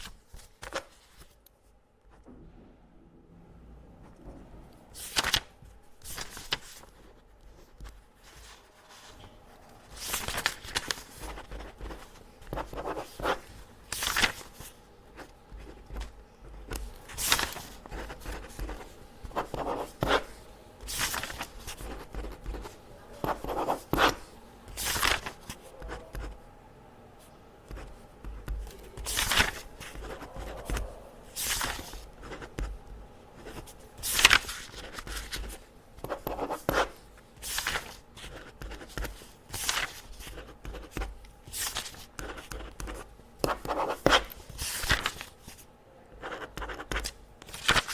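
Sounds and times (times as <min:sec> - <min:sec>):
paper rustling: 0:00.0 - 0:01.8, 0:04.9 - 0:26.4, 0:27.7 - 0:47.9
pen scratching on paper: 0:17.8 - 0:24.2, 0:27.6 - 0:44.9, 0:46.2 - 0:47.2.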